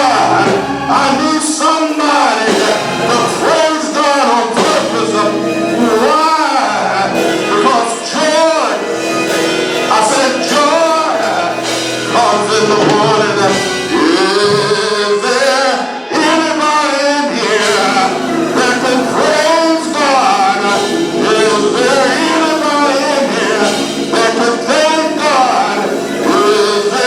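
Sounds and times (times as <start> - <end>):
gospel singing voices: 0.0 - 27.0
instrumental accompaniment: 0.0 - 27.0.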